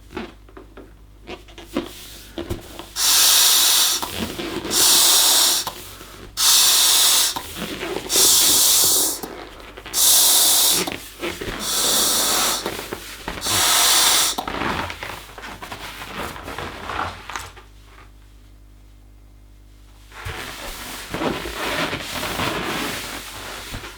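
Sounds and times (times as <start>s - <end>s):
rubbing on rubber balloon: 1.4s - 17.3s, 20.2s - 23.9s
balloon being blown up: 2.8s - 9.3s, 9.9s - 12.8s, 13.4s - 14.5s.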